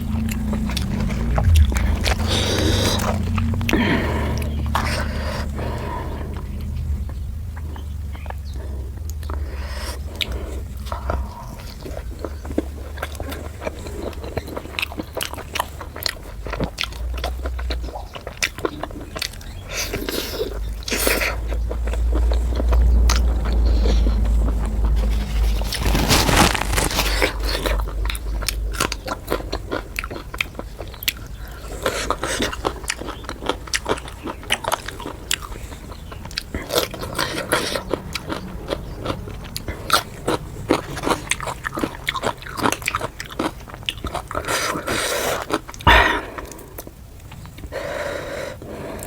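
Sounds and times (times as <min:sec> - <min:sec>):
low rumble: 0:00.0 - 0:13.8, 0:21.4 - 0:28.6, 0:45.9 - 0:47.4
person chewing crunchy food: 0:00.0 - 0:49.0.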